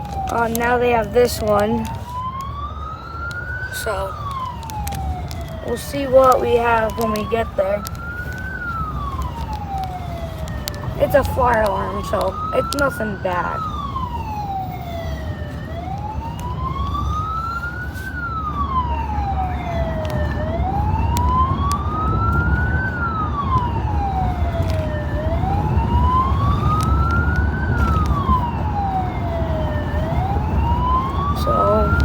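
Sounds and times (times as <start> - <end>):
emergency siren wailing: 0.0 - 32.0
vehicle rumble: 0.0 - 32.0.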